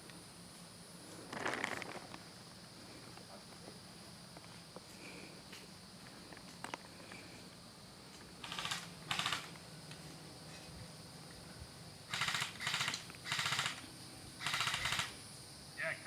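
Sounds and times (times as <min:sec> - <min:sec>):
airsoft rifle full-auto bursts: 0:08.4 - 0:09.6, 0:12.1 - 0:15.2.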